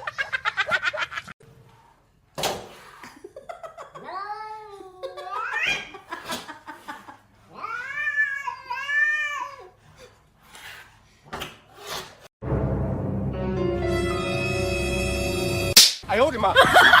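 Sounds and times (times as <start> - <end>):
cat yowling: 7.5 - 9.7.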